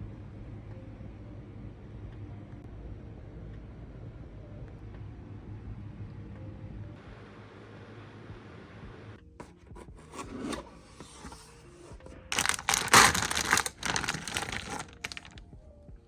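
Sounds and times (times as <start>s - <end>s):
packaging tearing and rustling: 12.3s - 15.4s.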